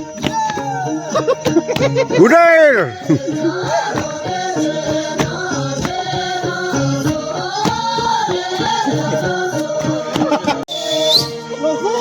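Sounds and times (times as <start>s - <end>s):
person singing with accompaniment: 0.0s - 12.0s.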